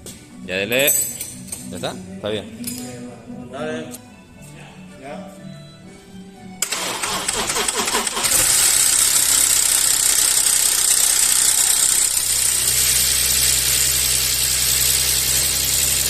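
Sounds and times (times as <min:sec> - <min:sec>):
car engine starting and idling: 0:06.6 - 0:16.0.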